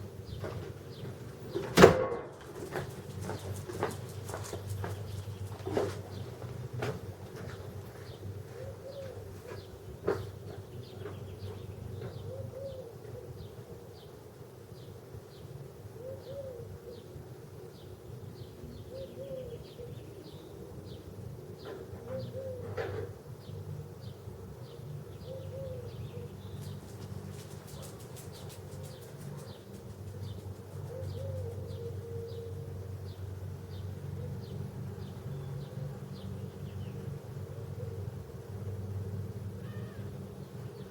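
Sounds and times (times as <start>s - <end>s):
bird cooing: 8.5s - 9.7s, 12.0s - 13.9s, 16.0s - 17.2s, 18.8s - 21.0s, 21.6s - 23.1s, 25.2s - 32.7s, 36.9s - 38.2s.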